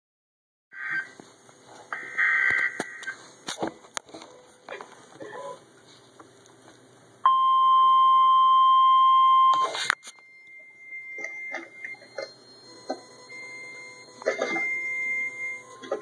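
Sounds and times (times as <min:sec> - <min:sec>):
loud high alarm beep: 0:07.3 - 0:16.0.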